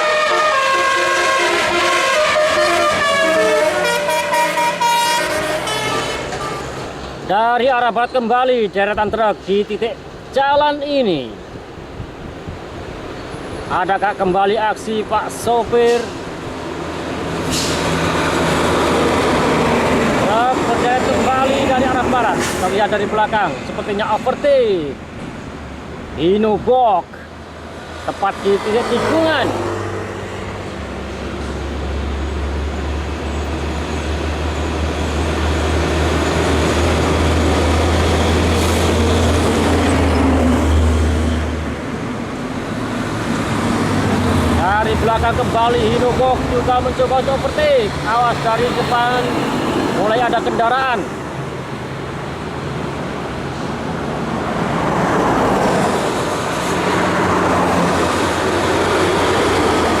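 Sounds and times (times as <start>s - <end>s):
heavy trucks passing: 0.0s - 60.0s
road and tyre noise: 0.0s - 60.0s.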